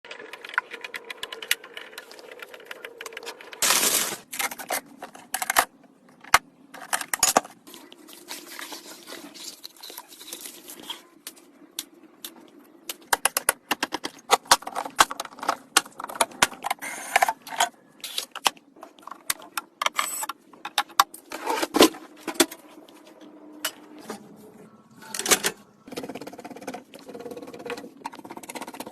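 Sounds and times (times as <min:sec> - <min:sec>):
computer parts clicking and snapping: 0:11.8 - 0:21.3.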